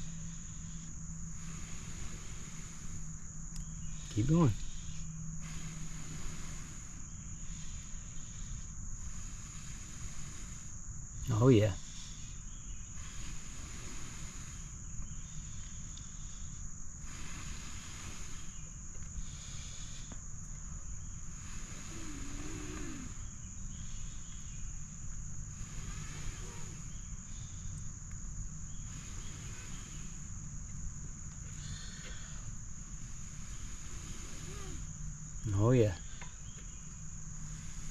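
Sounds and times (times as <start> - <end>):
person blowing on tinder: 0.0 - 3.2, 3.8 - 12.4, 13.0 - 20.2, 21.2 - 23.4, 25.5 - 27.6, 28.7 - 30.3, 31.5 - 35.0, 37.4 - 37.9
high insect drone: 0.0 - 37.9.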